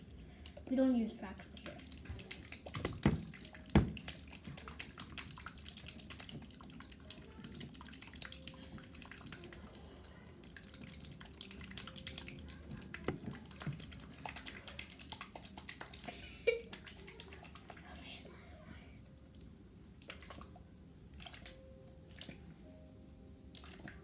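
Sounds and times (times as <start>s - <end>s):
small clicks and drips: 0.0s - 22.8s, 23.4s - 24.0s.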